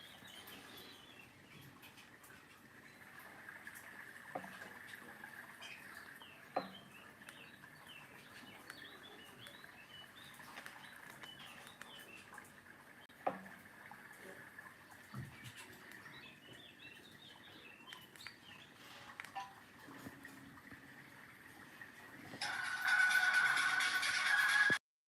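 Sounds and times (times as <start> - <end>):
small birds chirping: 0.0 - 3.6, 4.3 - 13.1, 14.2 - 19.5.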